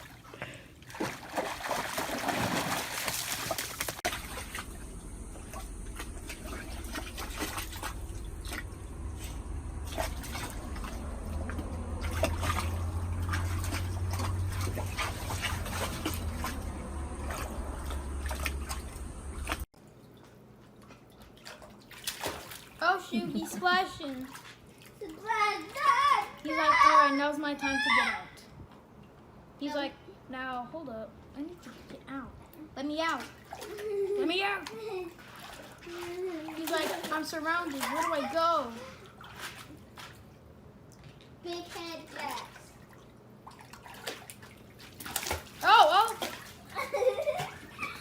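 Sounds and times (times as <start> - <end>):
water sloshing and dripping: 0.0 - 27.2, 31.2 - 48.0
dog splashing in water: 0.9 - 19.7, 21.2 - 25.8, 33.2 - 40.3, 41.6 - 48.0
low steady rumble: 4.1 - 19.7.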